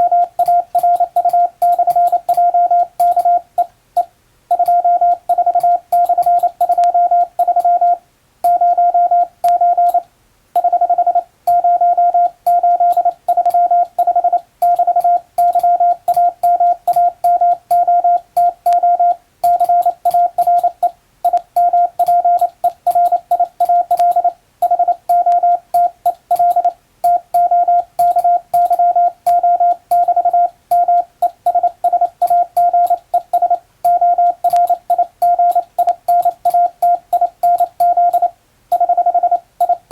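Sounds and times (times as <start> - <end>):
morse code beeps: 0.0 - 10.0, 10.6 - 39.9
telegraph key clicks: 24.9 - 38.3.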